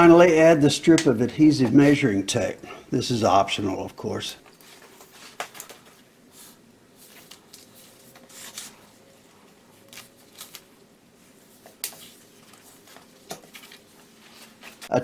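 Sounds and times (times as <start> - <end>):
tape peeling and rustling: 4.4 - 14.9.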